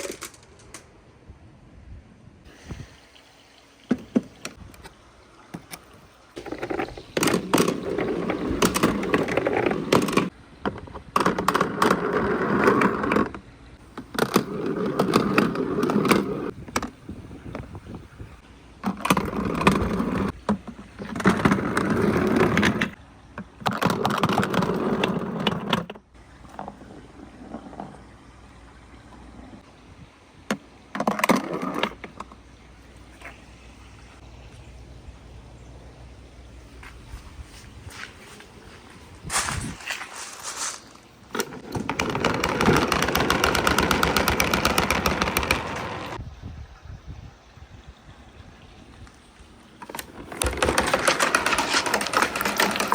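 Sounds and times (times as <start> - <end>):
balls rolling on wooden track: 0.0 - 0.9, 6.4 - 17.7, 18.8 - 28.1, 30.5 - 32.4, 40.2 - 46.2, 49.8 - 52.9
marbles clicking down a wooden run: 41.6 - 46.2, 49.9 - 52.9.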